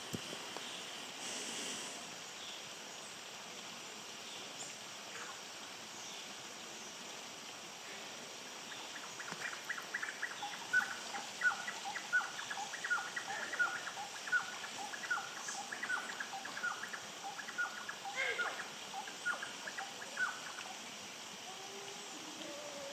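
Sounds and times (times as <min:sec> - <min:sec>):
woodpecker calling: 0:08.9 - 0:20.7.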